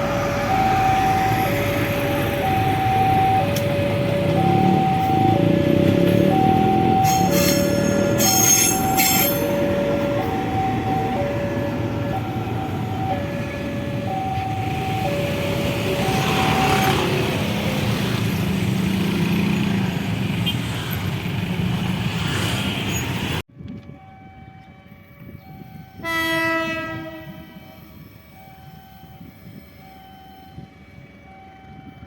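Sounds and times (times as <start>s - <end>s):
train rumbling past: 0.0s - 23.4s
crossing alarm two alternating tones: 0.2s - 18.0s, 24.0s - 32.0s.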